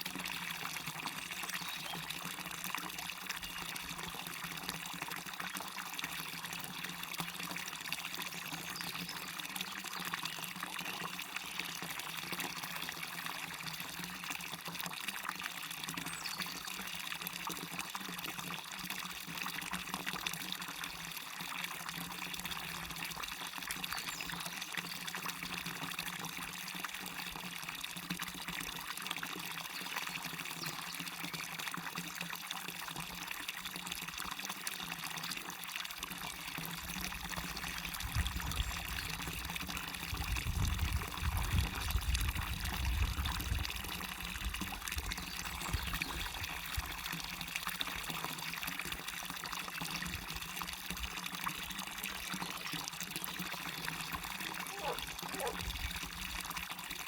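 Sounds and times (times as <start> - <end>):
small waterfall splashing: 0.0 - 57.0.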